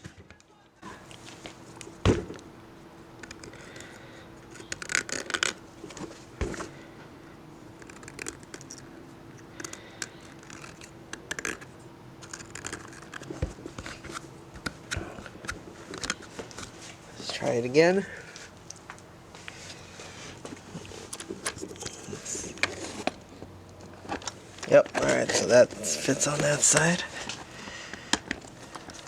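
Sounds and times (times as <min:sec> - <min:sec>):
knife scraping plastic: 0:03.2 - 0:06.8, 0:07.8 - 0:16.9, 0:24.0 - 0:29.0
clicks and knocks of handling: 0:26.7 - 0:29.0.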